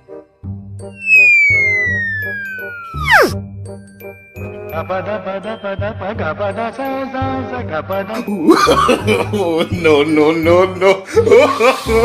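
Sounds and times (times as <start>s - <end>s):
bouncy tinkling music: 0.8s - 12.0s
cartoon falling whistle: 1.0s - 3.4s
wobbling warbling sound: 1.0s - 3.4s.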